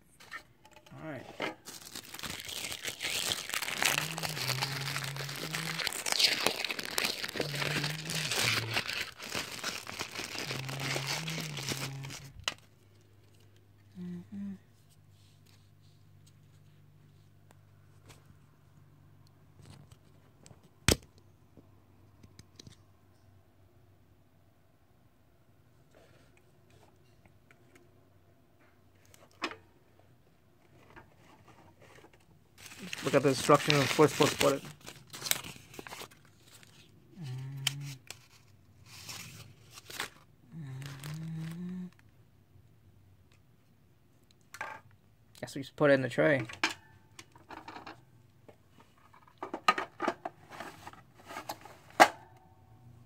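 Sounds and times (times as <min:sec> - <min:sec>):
packaging and paper rustling: 0:01.6 - 0:12.7, 0:30.7 - 0:37.0, 0:37.8 - 0:41.6
man humming: 0:03.7 - 0:09.1, 0:10.3 - 0:12.3, 0:13.9 - 0:14.7, 0:37.2 - 0:38.0, 0:40.5 - 0:42.0.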